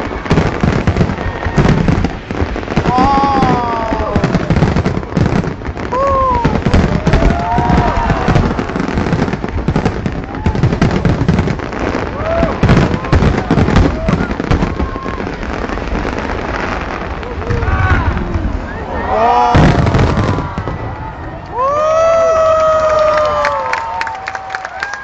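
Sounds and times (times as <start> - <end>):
fireworks bangs and crackles: 0.0 - 25.0
onlookers' voices: 2.8 - 5.2, 5.9 - 22.5.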